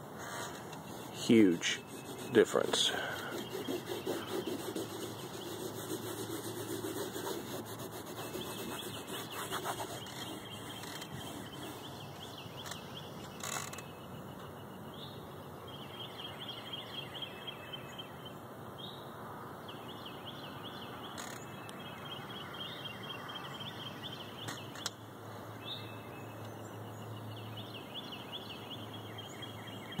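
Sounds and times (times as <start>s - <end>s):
small birds chirping: 0.2s - 19.0s, 25.6s - 30.0s.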